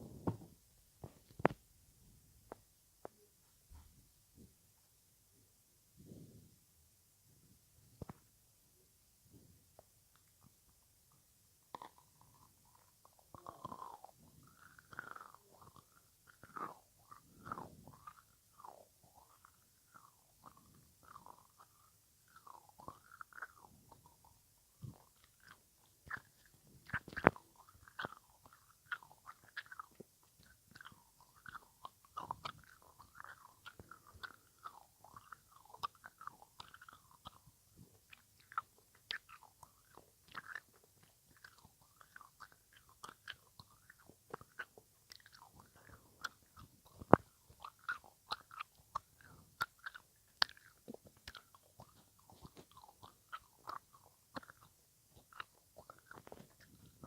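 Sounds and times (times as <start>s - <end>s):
wet mouth clicks and smacks: 11.7s - 57.0s.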